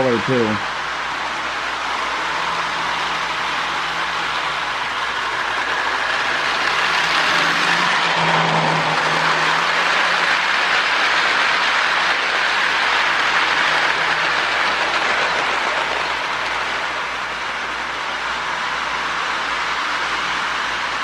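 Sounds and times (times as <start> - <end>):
toy train motor whirring: 0.0 - 21.0
toy train wheels rolling on rails: 0.0 - 21.0.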